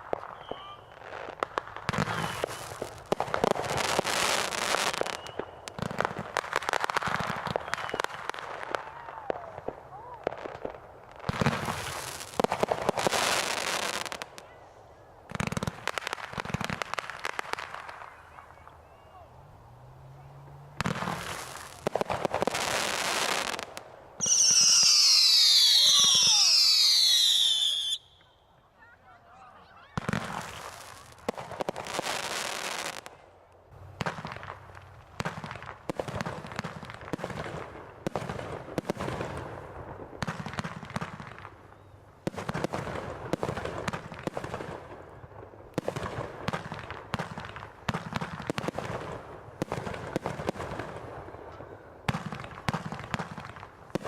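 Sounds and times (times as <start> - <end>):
firework crackles and pops: 0.0 - 14.6, 15.2 - 19.1, 20.8 - 28.3, 29.9 - 54.0
firework whistles falling in pitch: 0.2 - 1.1, 2.0 - 2.8, 4.8 - 5.8, 7.5 - 8.2, 24.2 - 28.4.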